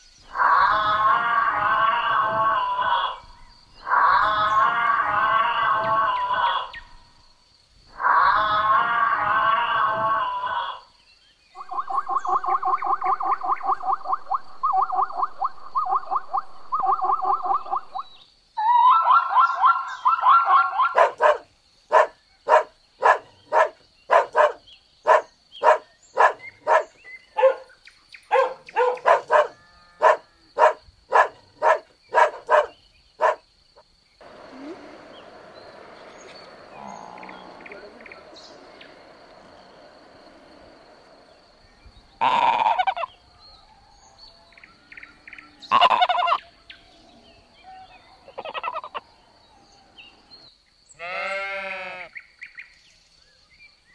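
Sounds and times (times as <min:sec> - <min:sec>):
background noise: 0:00.0 - 0:53.9
short sharp animal calls: 0:42.2 - 0:43.1, 0:45.7 - 0:46.4.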